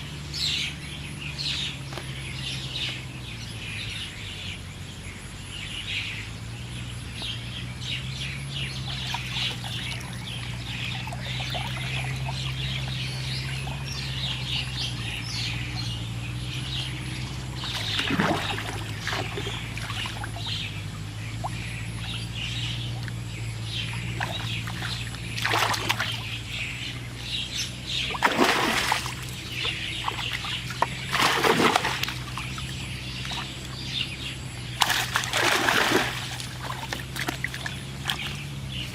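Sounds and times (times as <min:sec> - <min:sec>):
low hum: 0:00.0 - 0:38.9
small birds chirping: 0:00.0 - 0:38.9
water splashing in a pond: 0:08.5 - 0:38.9.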